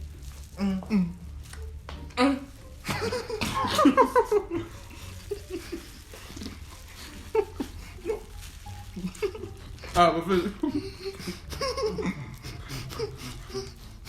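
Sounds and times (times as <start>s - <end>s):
people laughing: 2.8s - 8.4s, 9.0s - 14.0s
quiet chuckles: 10.4s - 14.0s.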